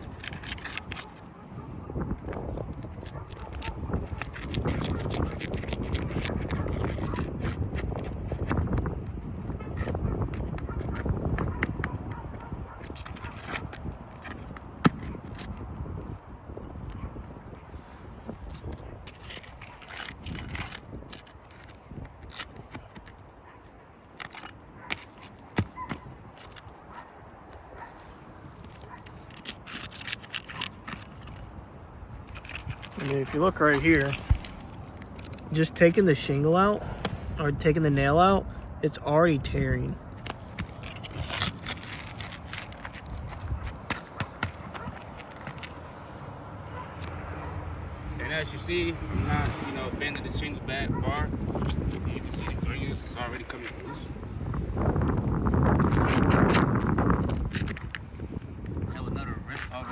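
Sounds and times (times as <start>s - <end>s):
shingle tearing: 0.0s - 1.4s, 2.1s - 15.7s, 18.3s - 46.0s, 55.6s - 58.2s
clicks and scrapes of shingle: 0.0s - 47.2s, 51.1s - 54.0s, 55.4s - 58.8s, 59.5s - 59.9s
scraping on roof shingles: 32.2s - 35.6s.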